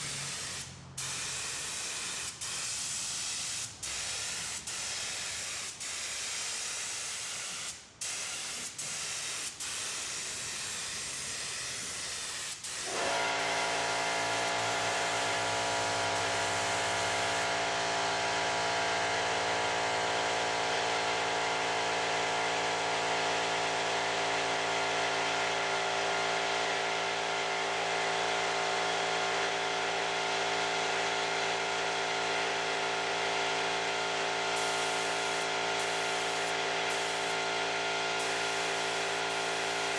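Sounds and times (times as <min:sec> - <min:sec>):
air spray gun hissing: 0:00.0 - 0:17.5, 0:34.6 - 0:37.5, 0:38.2 - 0:39.9.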